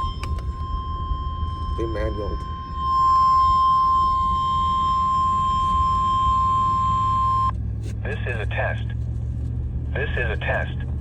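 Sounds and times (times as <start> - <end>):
steady electronic alarm tone: 0.0 - 7.5.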